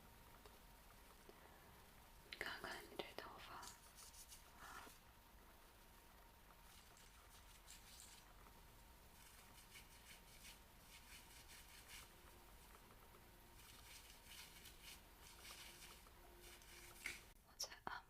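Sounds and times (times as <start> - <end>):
scratching and rustling: 3.2 - 5.0, 6.5 - 17.4.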